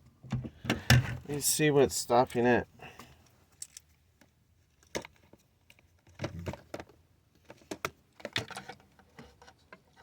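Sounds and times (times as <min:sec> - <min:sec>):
plastic clicks and rattles: 0:03.6 - 0:10.0.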